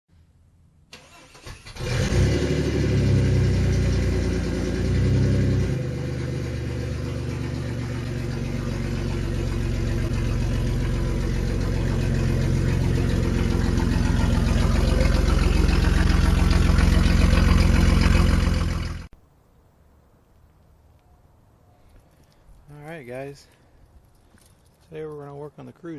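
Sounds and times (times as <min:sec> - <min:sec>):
car engine starting and revving: 0:00.9 - 0:19.1.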